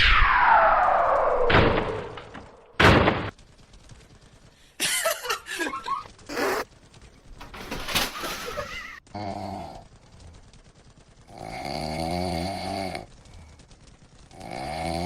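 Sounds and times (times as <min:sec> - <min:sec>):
pet snoring: 0:11.3 - 0:13.1.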